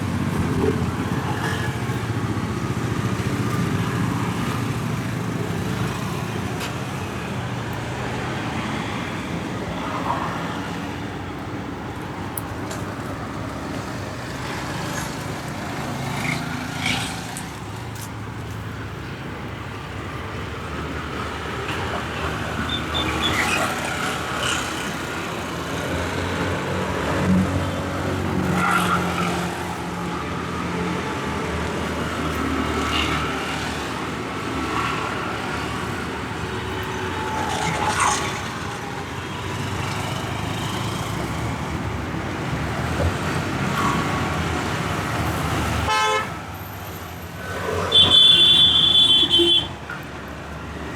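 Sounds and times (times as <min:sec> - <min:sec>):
vehicle engines passing: 0:00.0 - 0:50.9.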